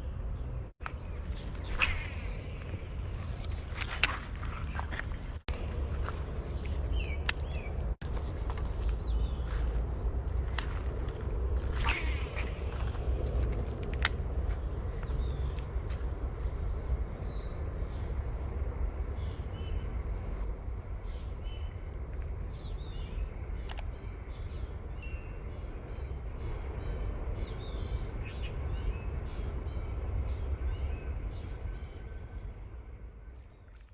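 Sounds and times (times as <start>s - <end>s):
constant low rumble: 0.0s - 33.9s
sharp clicks: 23.6s - 23.9s.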